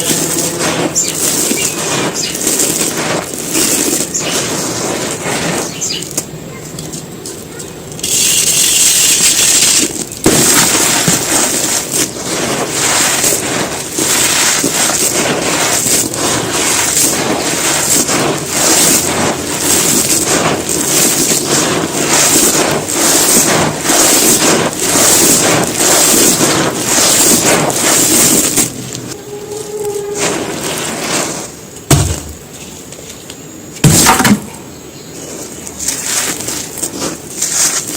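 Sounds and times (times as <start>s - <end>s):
cement crunching: 0.0s - 37.9s.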